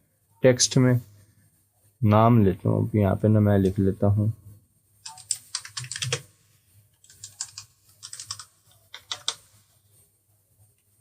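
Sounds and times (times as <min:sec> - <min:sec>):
computer keyboard typing: 0:05.0 - 0:06.3, 0:07.0 - 0:09.6.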